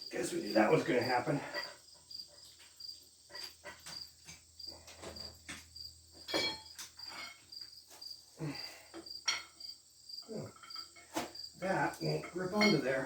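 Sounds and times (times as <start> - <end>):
crickets chirping: 0.0 - 13.0
metal tools clicking and knocking: 12.0 - 13.0.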